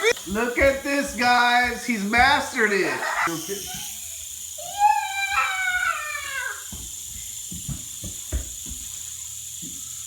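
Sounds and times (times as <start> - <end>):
high-pitched vocal cry: 4.6 - 6.6.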